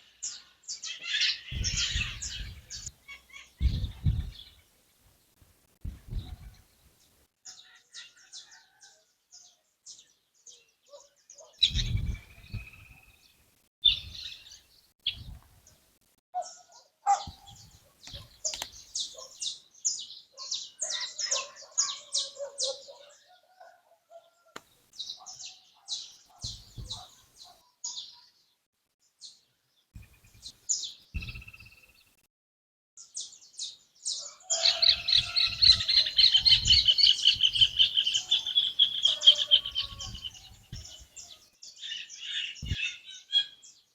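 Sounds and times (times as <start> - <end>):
songbirds chirping and singing: 0.0 - 5.0, 5.8 - 15.8, 16.4 - 28.5, 29.2 - 32.2, 33.0 - 43.9
low thumps: 1.6 - 2.9, 3.6 - 4.5, 5.8 - 6.6, 26.4 - 27.0, 31.2 - 31.7.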